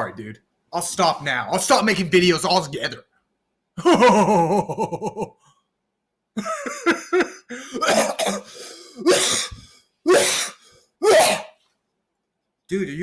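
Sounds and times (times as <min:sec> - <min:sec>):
man coughing: 0:06.4 - 0:11.6.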